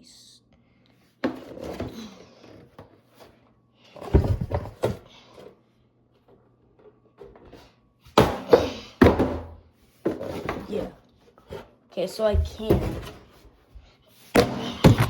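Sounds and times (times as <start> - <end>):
knocks and thuds on box: 14.4 - 15.0.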